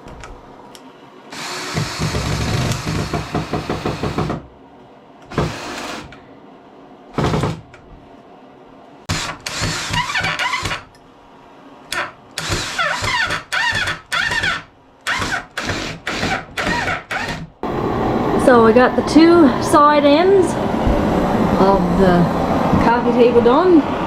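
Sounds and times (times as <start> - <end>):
power drill driving screws into wood: 1.3 - 4.2, 5.3 - 6.2, 9.1 - 10.8, 12.4 - 17.5.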